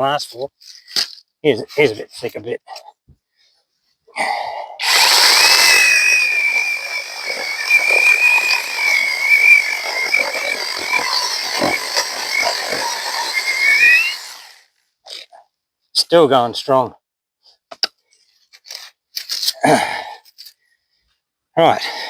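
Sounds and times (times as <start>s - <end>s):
chainsaw cutting log: 4.8s - 14.7s.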